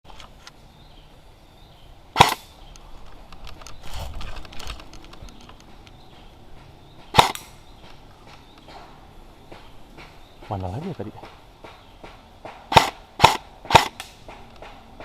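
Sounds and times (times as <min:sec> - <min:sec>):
airsoft rifle shots: 0:02.2 - 0:02.6, 0:07.1 - 0:07.6, 0:11.2 - 0:14.8
quiet knocks and rustling: 0:02.7 - 0:07.1.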